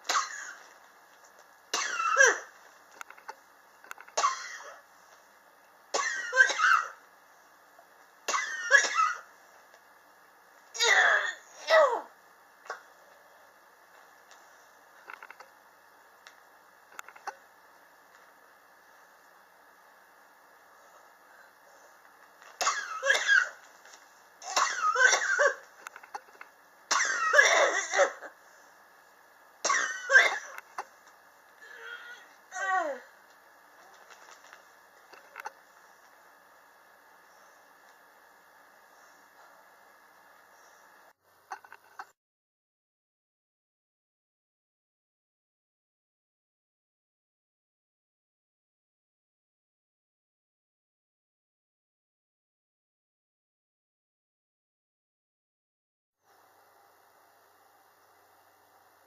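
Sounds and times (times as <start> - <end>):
person coughing: 0.0 - 0.6, 1.8 - 2.5, 4.2 - 4.8, 6.0 - 7.0, 26.9 - 28.4.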